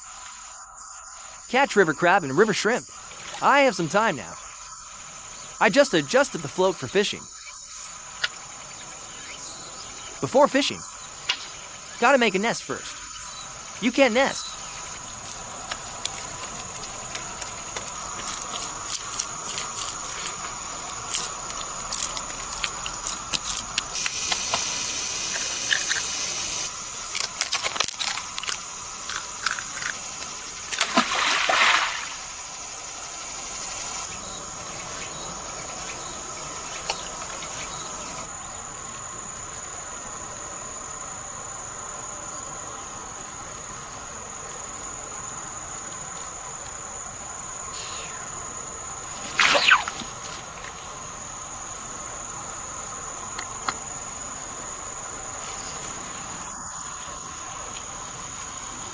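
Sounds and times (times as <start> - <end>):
insects chirring: 0.0 - 58.9.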